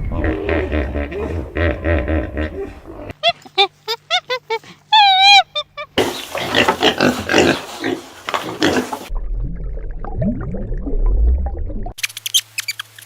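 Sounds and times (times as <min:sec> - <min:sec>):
low animal grunts: 0:00.1 - 0:03.1.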